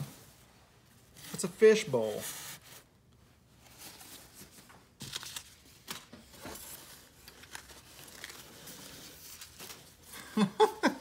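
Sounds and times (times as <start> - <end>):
packing material rustling: 3.6 - 10.1
packing material tearing: 7.2 - 9.9.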